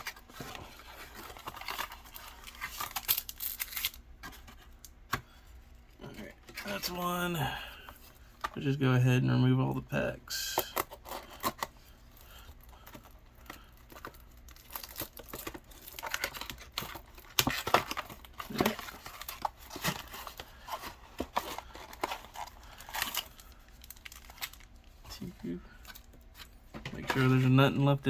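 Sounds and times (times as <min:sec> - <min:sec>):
foil wrappers crinkling: 0:00.0 - 0:05.0, 0:10.3 - 0:26.6.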